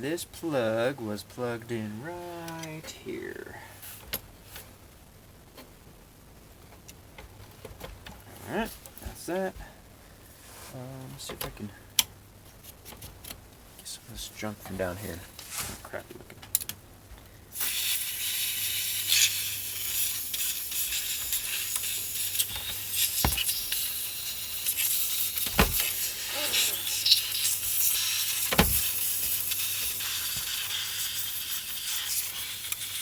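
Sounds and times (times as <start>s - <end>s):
compressed air spray hissing: 17.6s - 33.0s
dull knocks: 22.6s - 23.6s, 25.4s - 26.7s, 28.5s - 29.0s.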